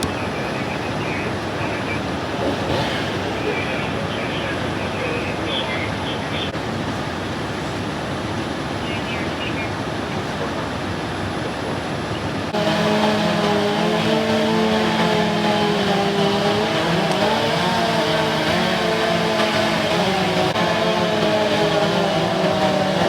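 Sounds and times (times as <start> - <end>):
motor running at high speed: 10.2 - 23.0.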